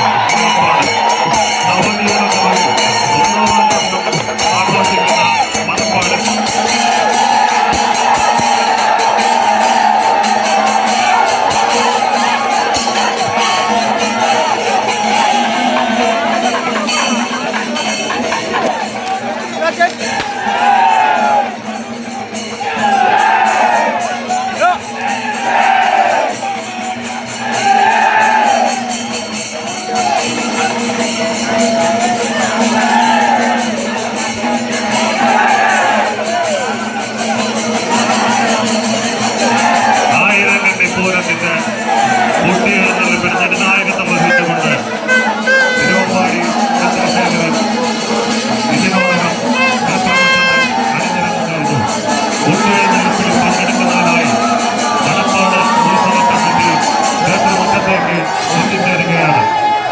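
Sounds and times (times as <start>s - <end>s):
pitch-bending melody: 0.0s - 19.8s, 40.2s - 59.4s
crowd noise: 0.0s - 59.9s
percussion ensemble: 0.0s - 59.9s
rapid cymbal strikes: 0.0s - 59.9s.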